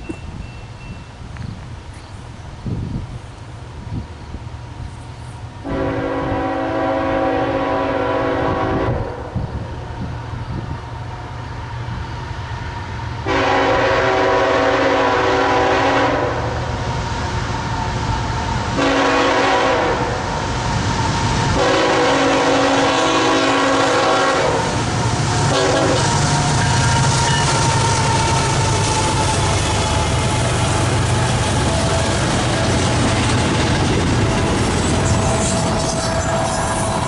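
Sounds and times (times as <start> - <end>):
low rumble of train: 0.0 - 37.0
locomotive horn blasts: 5.6 - 9.4, 13.2 - 16.5, 18.8 - 20.2, 21.6 - 24.8, 25.4 - 33.0.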